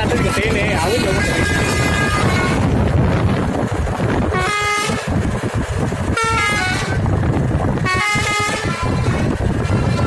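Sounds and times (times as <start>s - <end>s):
multi-tone bus horn melody: 0.0s - 2.8s, 4.3s - 5.1s, 6.1s - 7.1s, 7.8s - 10.0s
engine rumble and road noise: 0.0s - 10.0s.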